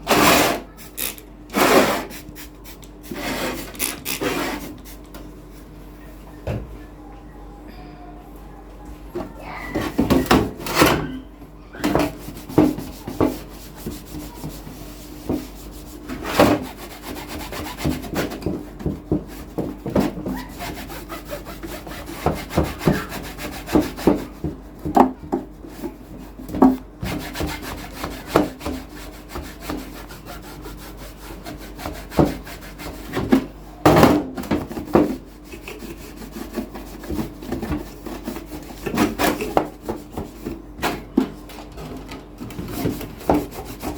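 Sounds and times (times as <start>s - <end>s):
tools scraping and knocking: 0.0s - 2.1s, 2.8s - 5.2s.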